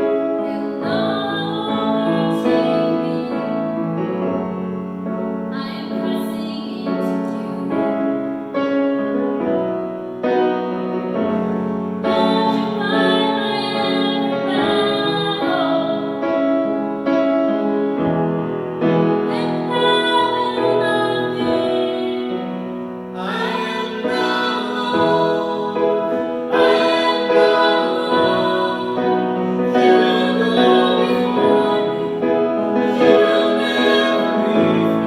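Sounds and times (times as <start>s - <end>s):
piano accompaniment: 0.0s - 35.0s
woman singing: 0.4s - 3.9s, 5.5s - 8.1s, 12.1s - 16.2s, 19.2s - 35.0s.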